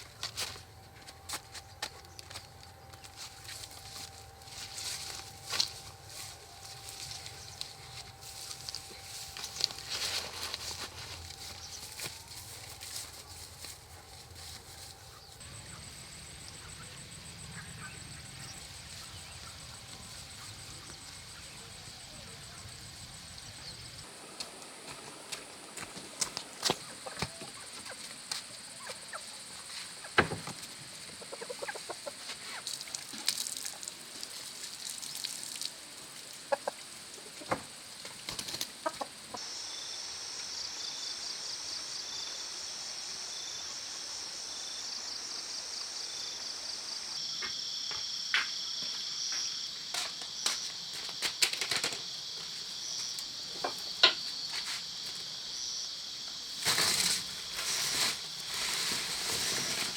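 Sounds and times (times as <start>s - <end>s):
high-pitched pulsing drone: 0.0s - 21.8s
chickens clucking: 26.6s - 28.2s, 31.0s - 32.6s, 36.5s - 37.7s, 38.3s - 39.4s.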